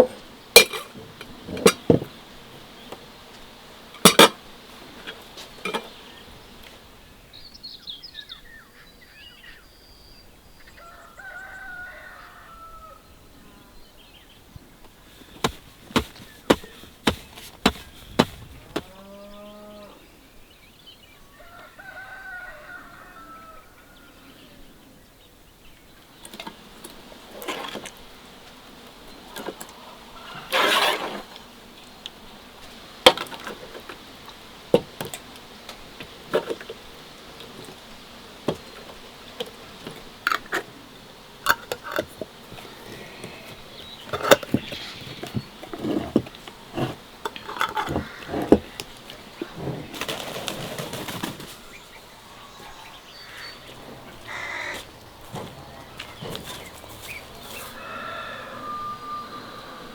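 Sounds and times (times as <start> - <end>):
rooster crowing: 10.7 - 13.2, 21.2 - 24.4, 52.1 - 59.9
sharp knocks: 15.4 - 18.9.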